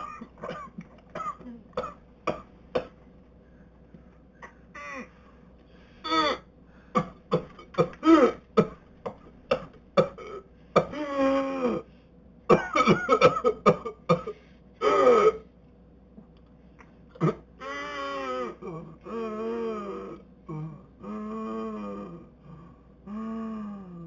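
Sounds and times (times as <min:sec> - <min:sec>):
person coughing: 0:00.0 - 0:03.0, 0:06.1 - 0:08.8, 0:09.5 - 0:11.1, 0:12.5 - 0:15.4, 0:17.2 - 0:17.5.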